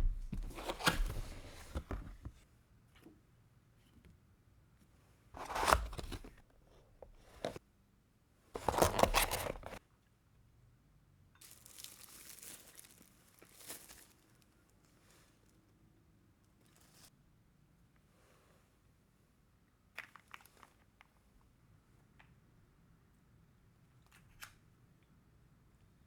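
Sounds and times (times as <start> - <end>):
packaging tearing and crinkling: 0.0 - 1.6, 5.4 - 6.4, 8.6 - 9.8.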